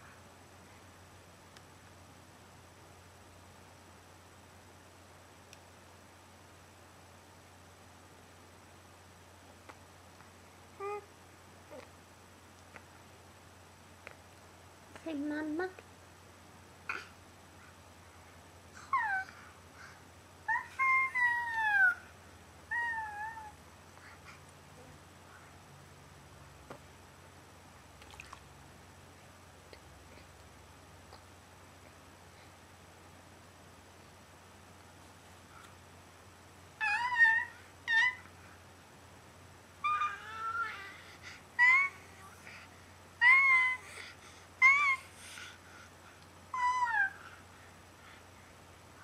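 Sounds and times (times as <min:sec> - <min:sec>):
baby squealing: 0:46.6 - 0:47.2.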